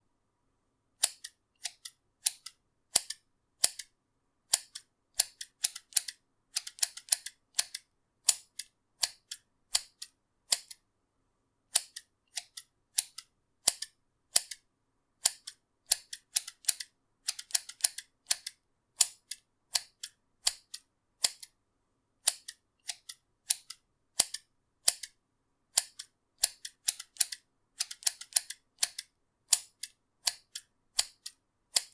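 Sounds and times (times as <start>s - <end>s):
scissors snipping: 1.0s - 3.9s, 4.6s - 10.8s, 25.8s - 31.9s.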